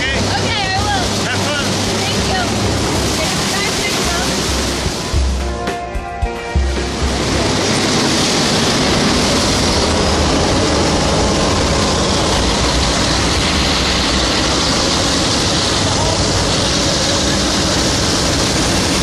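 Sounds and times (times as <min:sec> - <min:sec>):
plane engine rumble in cabin: 0:06.4 - 0:19.0.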